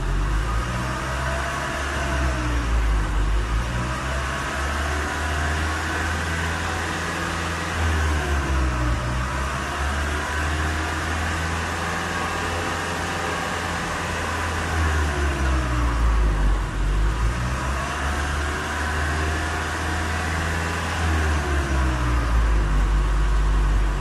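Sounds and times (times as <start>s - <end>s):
car exhaust drone: 0.0s - 24.0s.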